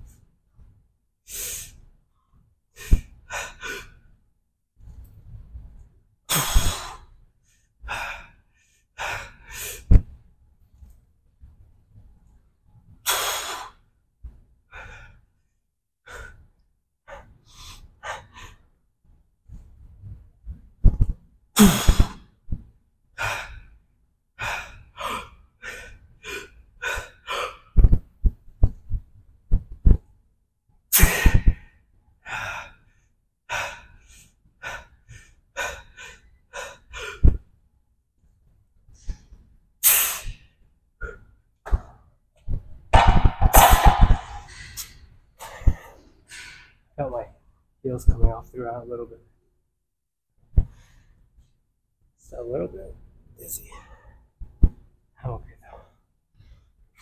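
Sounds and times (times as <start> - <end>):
man breathing hard: 2.8 - 4.1, 6.3 - 7.1, 7.8 - 10.0, 13.1 - 13.8, 14.7 - 15.4, 24.4 - 27.8, 31.0 - 37.4, 43.4 - 46.9.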